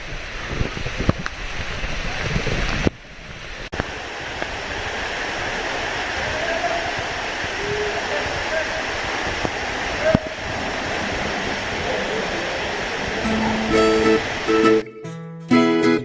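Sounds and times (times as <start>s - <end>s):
waterfall roaring: 0.0s - 14.9s.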